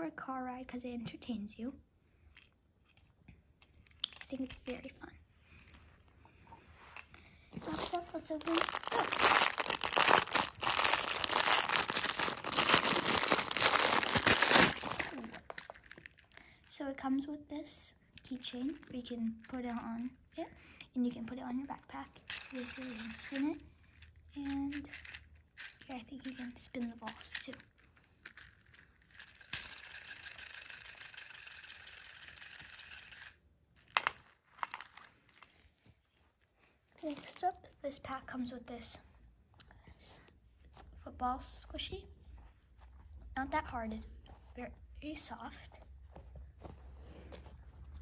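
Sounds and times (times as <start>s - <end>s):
fidget spinner whirring rattle: 3.9s - 5.9s, 21.8s - 35.1s
packaging crinkling: 6.9s - 16.4s.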